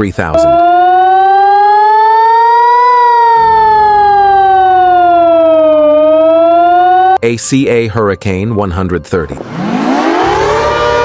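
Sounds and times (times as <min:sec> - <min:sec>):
siren wailing: 0:00.4 - 0:07.2, 0:09.4 - 0:11.0.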